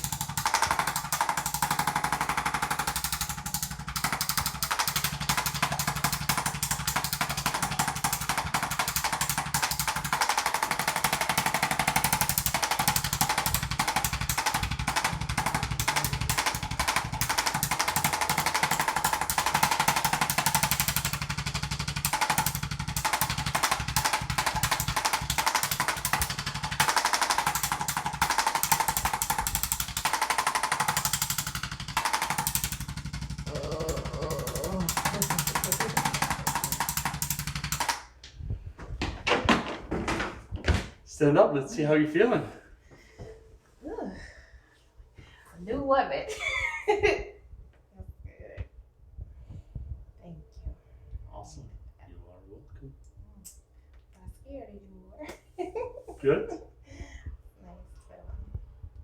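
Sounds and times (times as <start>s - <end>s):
motorised percussion device tapping: 0.0s - 38.3s.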